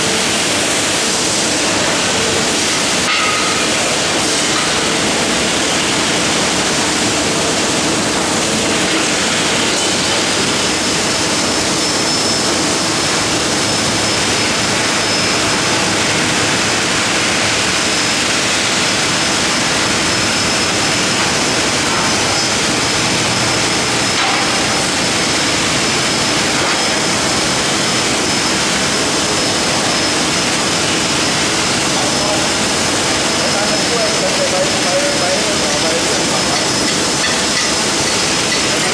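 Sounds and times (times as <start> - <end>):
welding arc hissing: 12.4 - 38.9.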